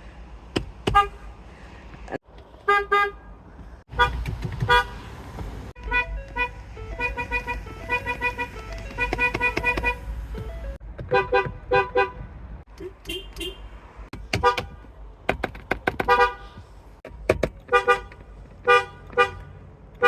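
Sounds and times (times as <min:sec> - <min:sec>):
car horn toots: 0:05.8 - 0:10.0, 0:12.8 - 0:13.7.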